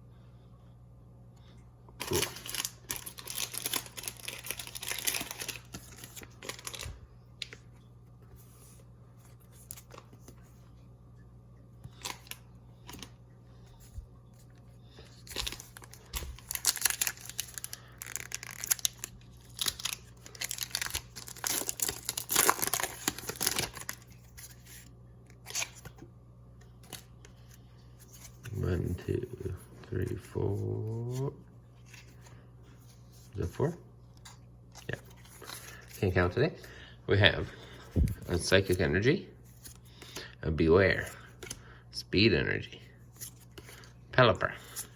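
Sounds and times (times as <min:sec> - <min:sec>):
faint low hum: 0:00.0 - 0:44.9
foil wrapper tearing and crinkling: 0:02.0 - 0:07.0, 0:15.2 - 0:24.2.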